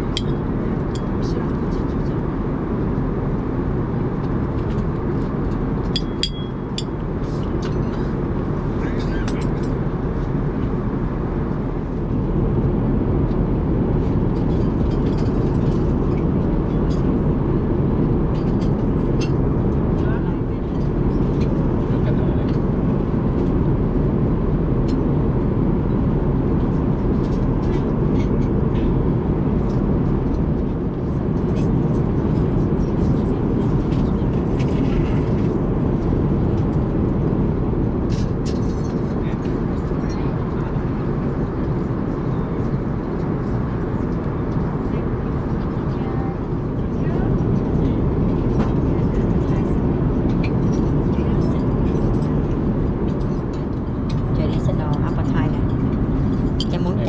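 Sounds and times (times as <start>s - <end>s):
airplane cabin engine rush: 0.0s - 57.0s.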